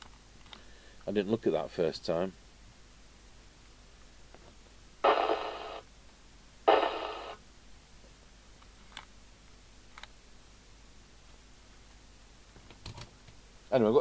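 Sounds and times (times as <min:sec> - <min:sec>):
radio hiss bursts: 0:05.0 - 0:05.9, 0:06.7 - 0:07.4.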